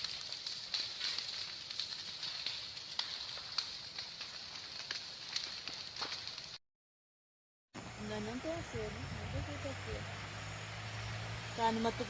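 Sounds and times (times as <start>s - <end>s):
fire crackling and popping: 0.0s - 6.6s.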